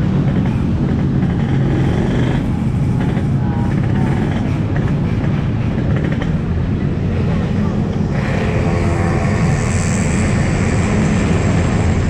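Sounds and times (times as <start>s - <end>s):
two-stroke motorcycle engine running: 0.0s - 6.7s.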